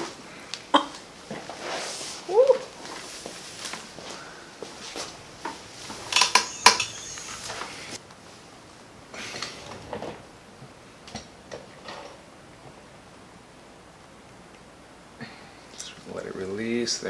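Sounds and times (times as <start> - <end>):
sharp joint cracks: 5.5 - 7.8.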